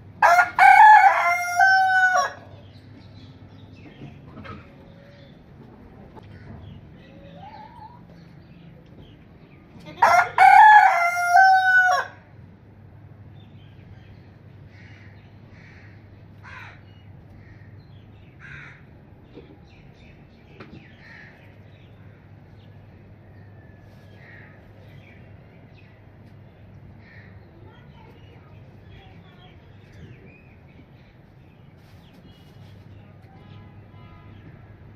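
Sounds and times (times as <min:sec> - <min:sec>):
rooster crowing: 0:00.2 - 0:02.5, 0:10.0 - 0:12.3.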